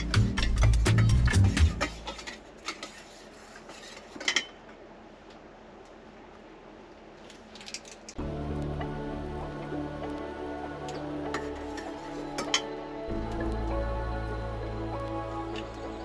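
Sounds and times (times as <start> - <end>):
background music: 0.0 - 2.0, 8.2 - 16.0.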